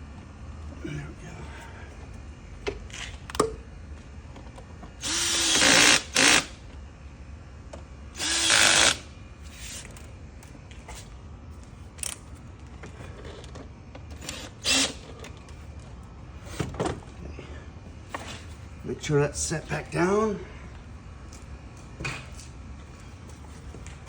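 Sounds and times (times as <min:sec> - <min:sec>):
drill driver spinning: 0:05.0 - 0:06.5, 0:08.2 - 0:10.0, 0:14.2 - 0:15.1.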